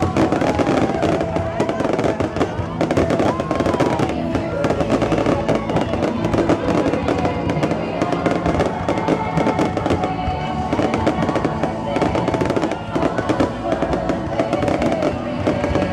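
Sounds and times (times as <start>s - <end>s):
fireworks bursting and crackling: 0.0s - 15.9s
music playing: 0.0s - 15.9s.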